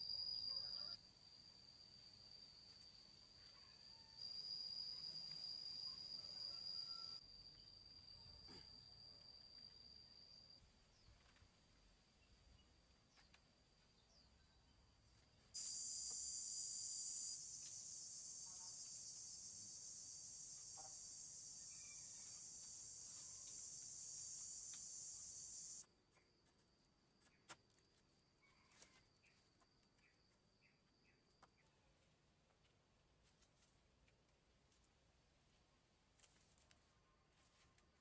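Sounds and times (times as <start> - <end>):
faint high insect tone: 0.0 - 38.0
high-pitched insect buzz: 15.6 - 25.8.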